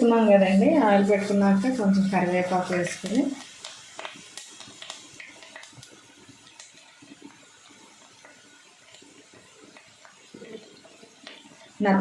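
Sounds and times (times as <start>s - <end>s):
leaves sizzling in hot oil: 0.0s - 12.0s
small oil pops: 2.7s - 11.5s.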